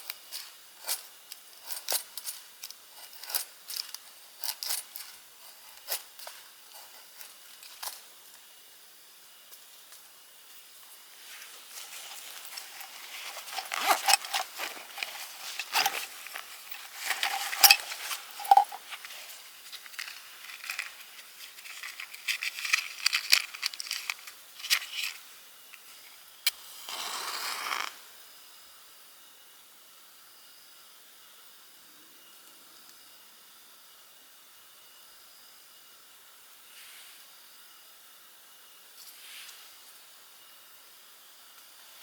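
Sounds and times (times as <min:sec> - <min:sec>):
hiss-like scrape: 0:00.0 - 0:28.7, 0:36.6 - 0:37.9, 0:38.9 - 0:41.0
objects clicking and clattering: 0:11.9 - 0:25.2.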